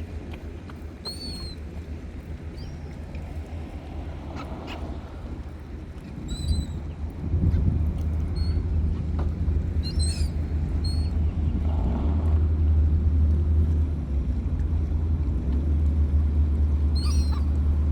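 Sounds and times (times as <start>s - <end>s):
bird chirps: 1.0s - 1.6s, 9.8s - 11.2s.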